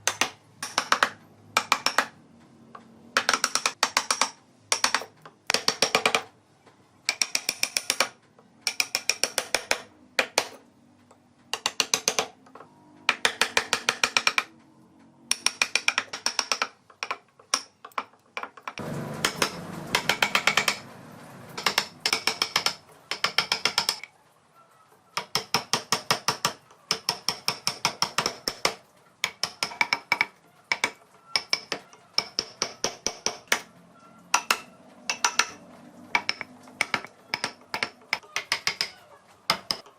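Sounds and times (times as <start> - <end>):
rapid mechanical clicking: 18.4 - 24.1.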